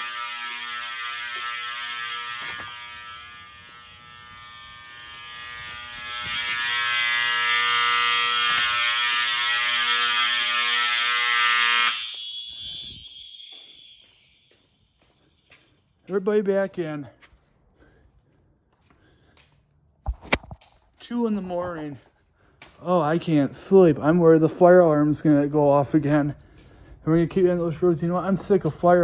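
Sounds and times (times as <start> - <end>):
fire alarm horn buzzy tone: 0.0 - 16.2, 23.6 - 29.0.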